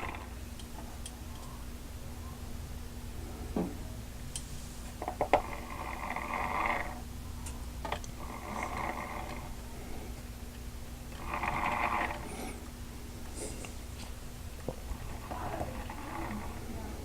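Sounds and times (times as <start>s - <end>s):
breathing near microphone: 12.2s - 13.9s.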